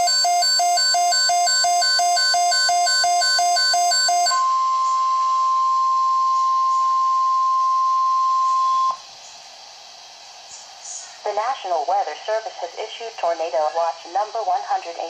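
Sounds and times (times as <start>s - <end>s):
fast repeating electronic beeping: 0.0s - 5.0s
steady alarm tone: 0.0s - 9.0s.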